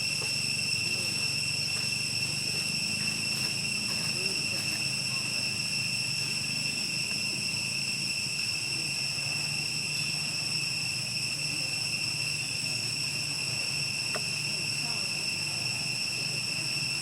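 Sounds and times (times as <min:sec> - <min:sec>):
insects droning: 0:00.0 - 0:17.0.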